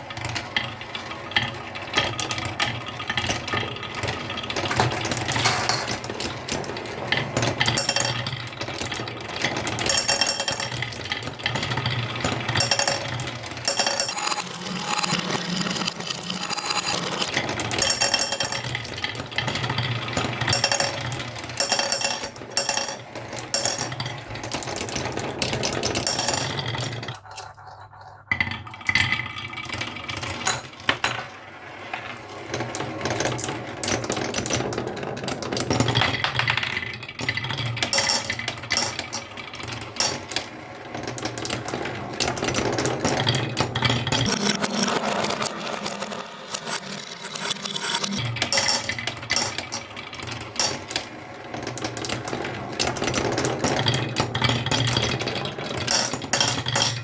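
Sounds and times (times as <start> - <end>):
marbles rattling down wooden run: 7.2 - 30.8.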